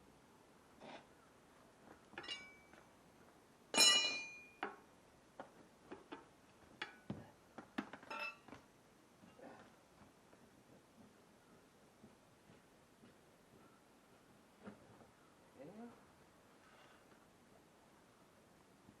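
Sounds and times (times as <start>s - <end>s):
metal clanking and clinking: 2.2s - 2.8s, 3.8s - 4.6s
loud ringing metal clank: 3.8s - 4.6s.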